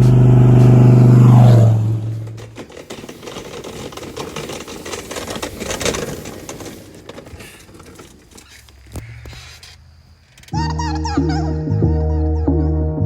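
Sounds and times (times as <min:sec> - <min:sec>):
car engine revving: 0:00.0 - 0:02.7
crackling rattle of rapid clicks: 0:02.0 - 0:09.2.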